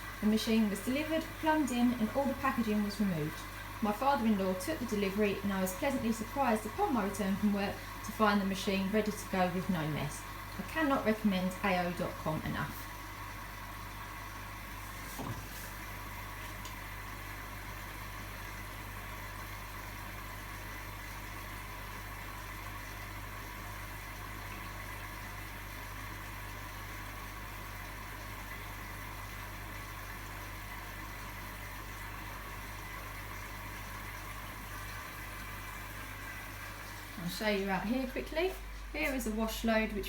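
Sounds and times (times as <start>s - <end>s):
washing machine humming: 0.0s - 40.0s.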